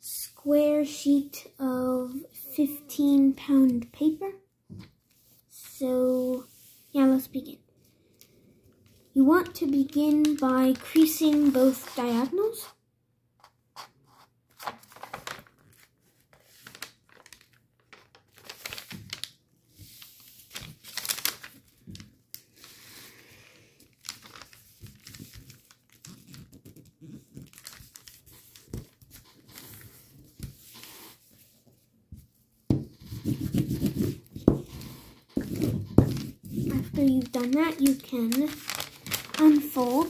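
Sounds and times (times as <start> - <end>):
paper crease rubbing strokes: 6.2 - 7.1, 27.7 - 31.7, 32.9 - 40.0
paper rustling and crinkling: 8.9 - 12.6, 14.5 - 23.1, 23.8 - 40.0.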